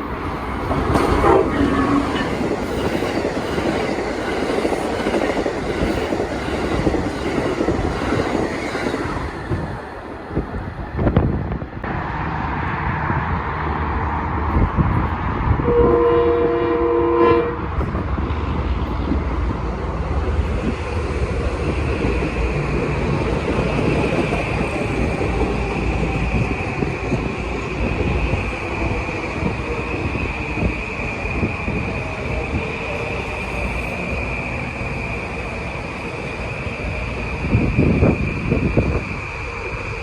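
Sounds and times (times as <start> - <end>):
train rumbling past: 0.0 - 40.0
train horn blast: 1.2 - 2.1, 15.6 - 17.7.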